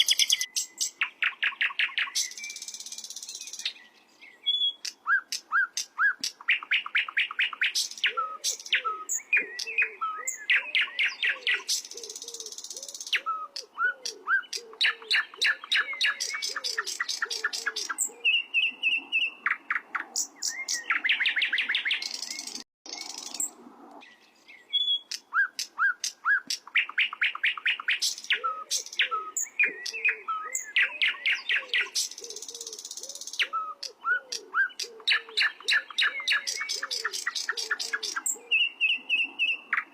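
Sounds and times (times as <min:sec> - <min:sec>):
songbird chirping and trilling: 0:00.0 - 0:39.9.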